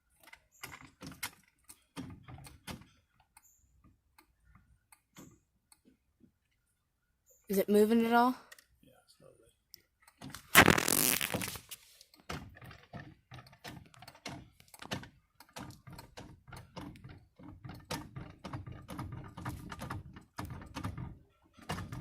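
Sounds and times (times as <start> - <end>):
jack clicking and knocking: 12.2 - 22.0.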